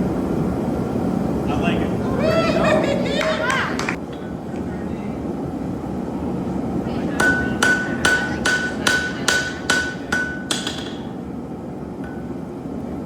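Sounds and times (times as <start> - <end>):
hammer striking steel on anvil: 7.2 - 11.2, 12.0 - 12.3.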